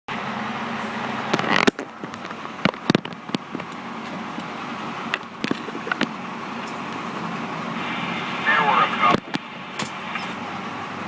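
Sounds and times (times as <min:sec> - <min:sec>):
fire engine rumbling: 0:00.1 - 0:11.0
sharp clicks and knocks: 0:01.1 - 0:07.3.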